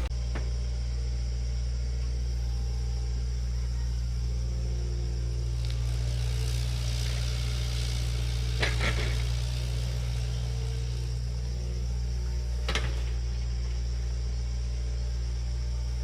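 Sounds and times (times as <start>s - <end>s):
diesel engine running: 0.0s - 16.0s.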